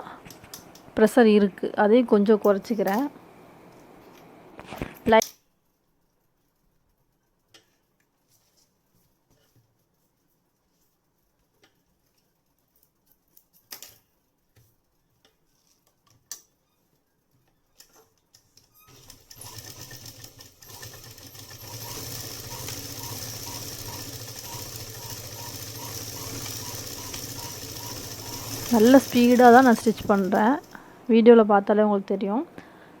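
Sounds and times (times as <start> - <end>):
sewing machine running: 18.8 - 30.8.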